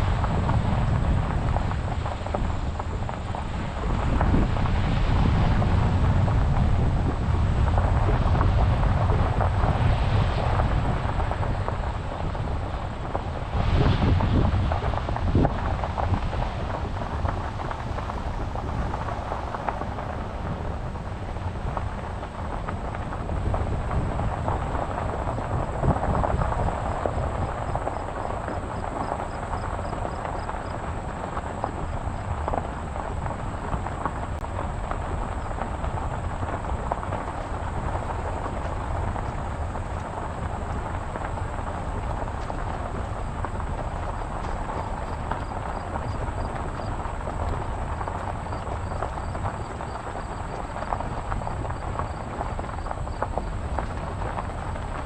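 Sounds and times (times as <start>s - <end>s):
wind buffeting the microphone: 0.0s - 55.0s.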